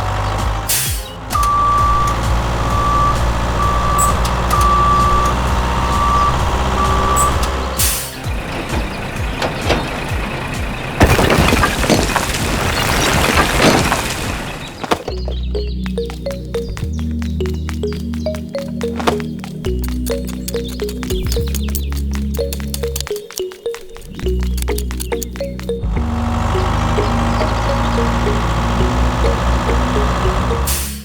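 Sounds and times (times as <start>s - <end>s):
rough scraping and rattling: 0.0s - 15.4s
heavy vehicle engine droning: 0.0s - 23.0s, 24.2s - 31.0s
air-brake hiss: 0.6s - 10.0s, 30.6s - 31.0s
reversing alarm beeping: 0.7s - 11.0s.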